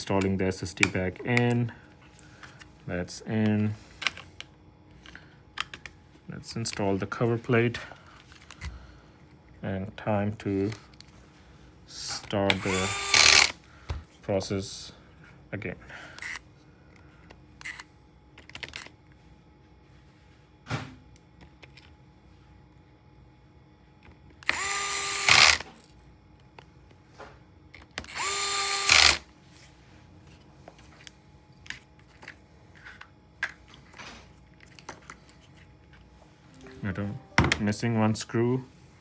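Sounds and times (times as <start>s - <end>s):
electric screwdriver driving screws: 12.5s - 13.6s, 24.4s - 25.7s, 28.0s - 29.2s.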